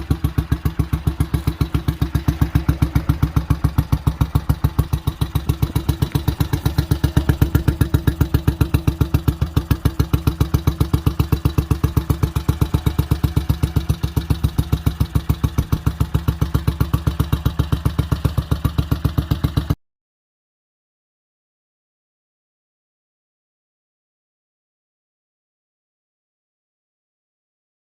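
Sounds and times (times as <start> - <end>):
motorcycle engine idling: 0.0 - 19.8.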